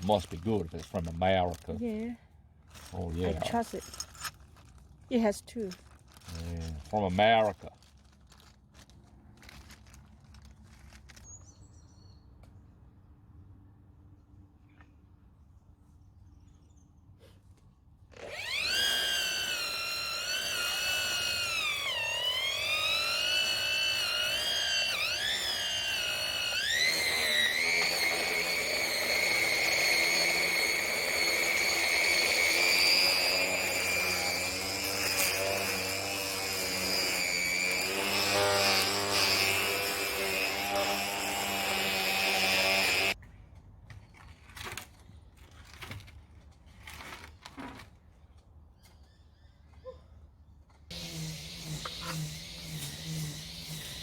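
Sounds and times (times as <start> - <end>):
string trimmer whining: 2.9 - 3.8, 18.1 - 43.2, 50.9 - 54.0.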